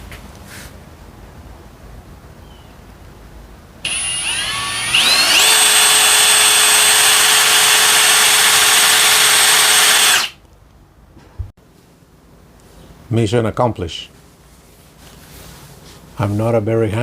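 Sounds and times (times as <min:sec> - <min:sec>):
power drill motor whine: 0:03.9 - 0:10.4.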